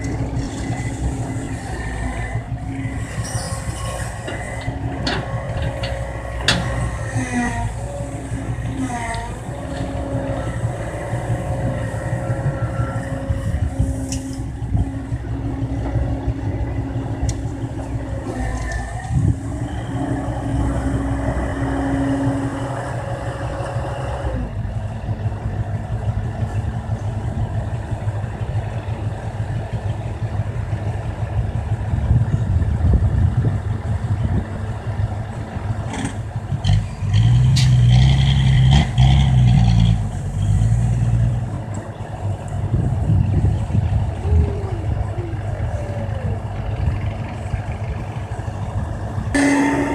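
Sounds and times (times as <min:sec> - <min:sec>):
hydraulic whine: 0:00.0 - 0:24.8, 0:39.9 - 0:49.9
excavator diesel engine running: 0:00.0 - 0:49.9.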